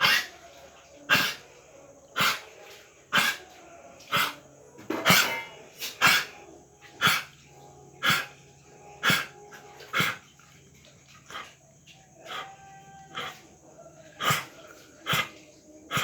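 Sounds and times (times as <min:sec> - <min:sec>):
dog coughing: 0:00.0 - 0:00.4, 0:01.1 - 0:01.5, 0:02.2 - 0:02.5, 0:03.1 - 0:03.4, 0:04.0 - 0:06.4, 0:07.0 - 0:07.4, 0:08.0 - 0:08.4, 0:09.0 - 0:10.3, 0:11.3 - 0:11.6, 0:12.2 - 0:12.5, 0:13.1 - 0:13.4, 0:14.1 - 0:16.0.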